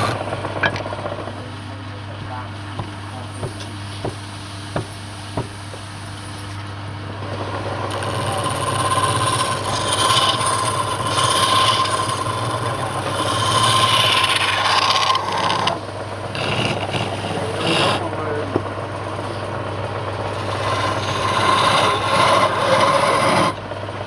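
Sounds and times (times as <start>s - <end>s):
tool cutting spinning wood: 0.0s - 1.5s, 7.2s - 23.7s
wood lathe motor running: 0.0s - 1.6s, 7.0s - 24.0s.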